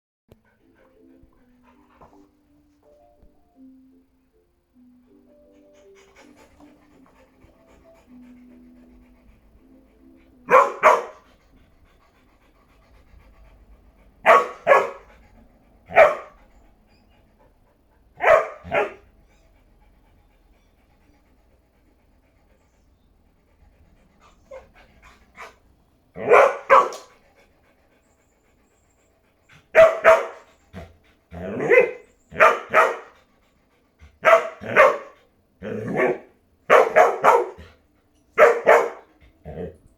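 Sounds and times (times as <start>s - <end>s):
faint music: 0.3s - 39.9s
dog barking: 10.5s - 11.2s, 14.2s - 15.0s, 15.9s - 16.4s, 18.2s - 19.0s, 26.2s - 27.1s, 29.8s - 30.4s, 31.5s - 33.1s, 34.2s - 37.7s, 38.4s - 39.1s.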